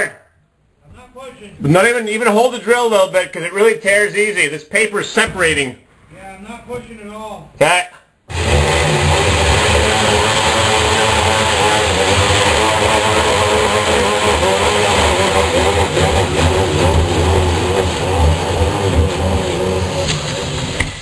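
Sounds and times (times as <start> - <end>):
drywall paper tearing: 8.3 - 20.8
electric drill cutting drywall: 8.3 - 21.0.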